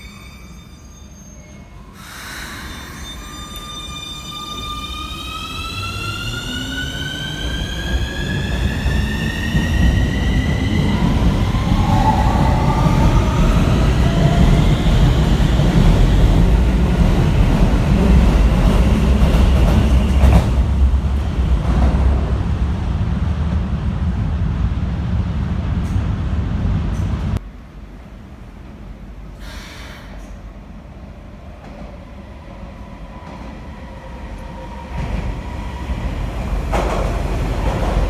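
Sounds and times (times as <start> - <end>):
train cars rumbling on rails: 2.0 - 27.4, 33.0 - 38.0.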